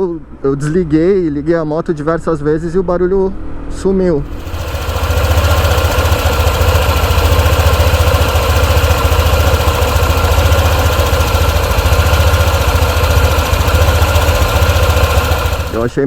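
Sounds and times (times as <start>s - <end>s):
scooter engine idling: 4.2s - 16.0s.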